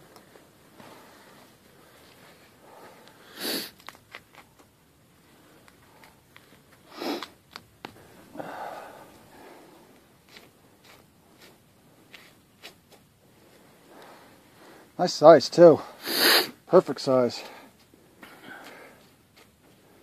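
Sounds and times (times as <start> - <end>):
handling clicks and rustles: 0.0 - 8.1
soft breath: 0.2 - 3.6, 7.9 - 10.0, 17.4 - 20.0
person sniffing: 3.2 - 3.8, 6.9 - 7.3, 15.8 - 16.6.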